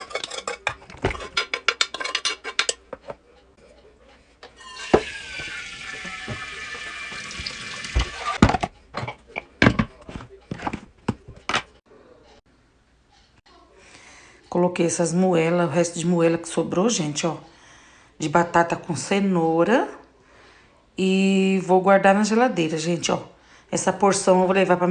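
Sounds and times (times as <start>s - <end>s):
dishes and cutlery clattering: 0.0s - 3.2s, 4.4s - 10.8s
water tap running into sink: 4.6s - 8.4s.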